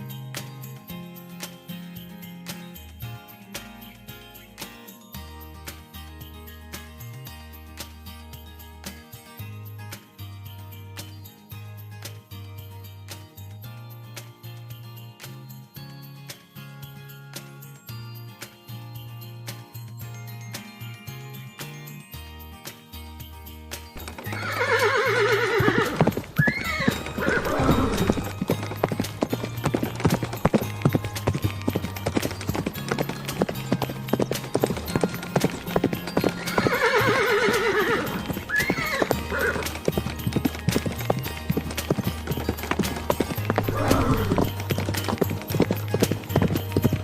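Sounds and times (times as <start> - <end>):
horse whinnying: 24.0 - 30.2, 36.2 - 40.0, 43.4 - 44.6
hooves clip-clopping: 24.0 - 47.0.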